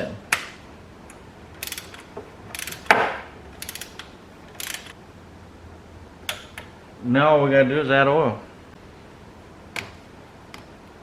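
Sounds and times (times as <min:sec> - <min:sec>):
torque wrench ratcheting: 0:01.6 - 0:03.0, 0:03.6 - 0:05.0.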